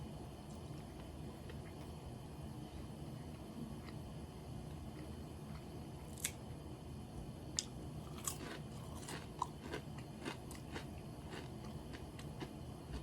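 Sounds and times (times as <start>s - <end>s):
low steady hum: 0.0s - 13.0s
crunching and chewing fried chicken: 4.7s - 6.4s, 7.6s - 13.0s.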